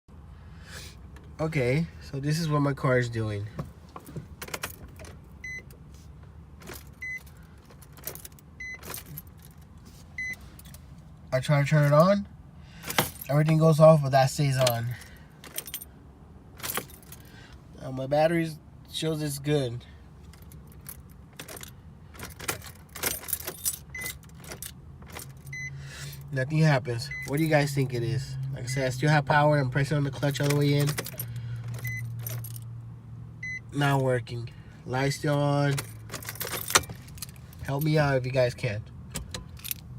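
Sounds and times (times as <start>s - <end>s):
low steady hum: 0.1s - 39.9s
key ring jangling: 6.6s - 10.8s, 14.6s - 15.9s, 16.6s - 17.3s, 20.2s - 25.7s, 30.4s - 32.7s, 35.7s - 37.6s, 39.3s - 39.9s
high electronic warning beep: 10.2s - 10.4s, 33.4s - 33.8s.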